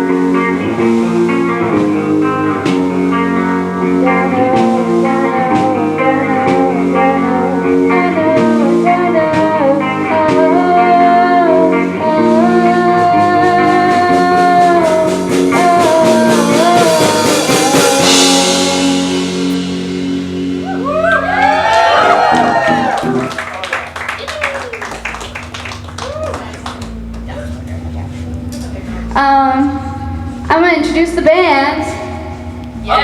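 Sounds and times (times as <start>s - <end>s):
live rock band playing: 0.0s - 33.0s
person singing: 4.0s - 19.4s
cymbal wash: 17.0s - 21.0s.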